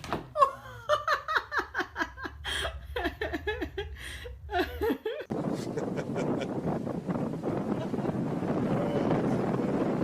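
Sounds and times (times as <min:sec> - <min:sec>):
person laughing: 0:00.4 - 0:06.6, 0:07.6 - 0:08.4.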